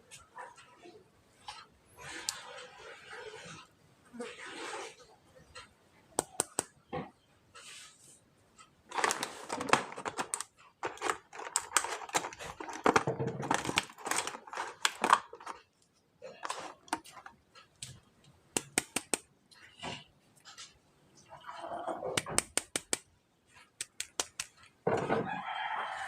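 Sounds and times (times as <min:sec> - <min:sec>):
plastic toys clicking and tapping: 0:06.2 - 0:06.8, 0:08.6 - 0:19.8, 0:22.2 - 0:24.8
packaging rustling: 0:08.9 - 0:15.7, 0:16.3 - 0:17.4.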